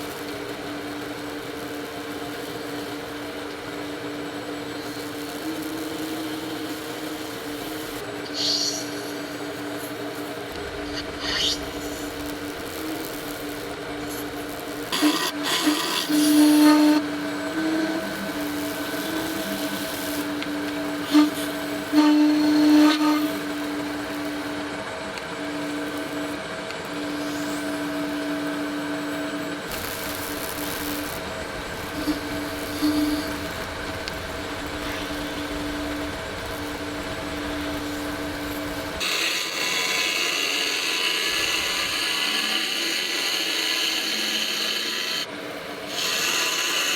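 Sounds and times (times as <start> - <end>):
lathe humming: 0.0 - 46.9
hissy tool contact: 7.7 - 17.0, 29.7 - 39.0
tool against spinning workpiece: 10.5 - 20.4, 29.7 - 46.9.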